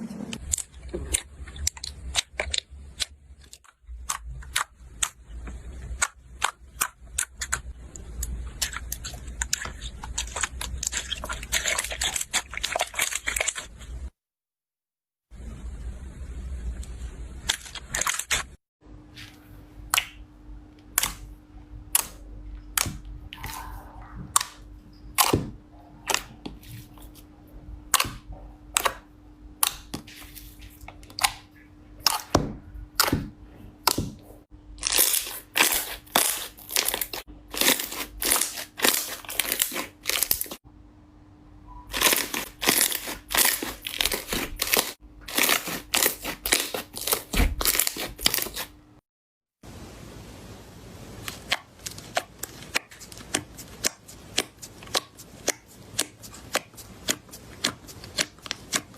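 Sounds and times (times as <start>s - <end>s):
slime squeezed by hand: 41.8s - 48.7s.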